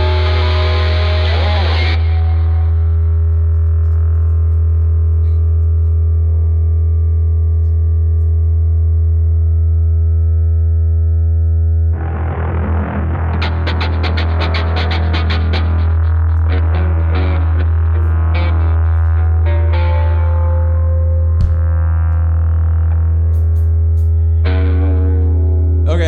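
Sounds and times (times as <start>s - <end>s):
low droning amplified note: 5.3s - 26.0s
live rock band: 12.6s - 17.6s.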